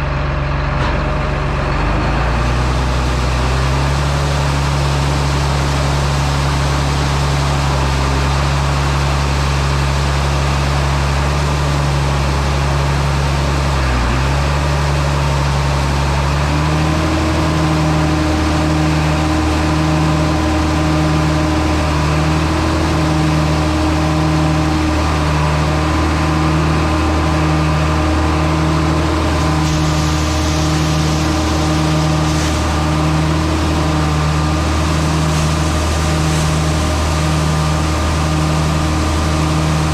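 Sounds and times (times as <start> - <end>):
heavy engine running: 0.0 - 39.9.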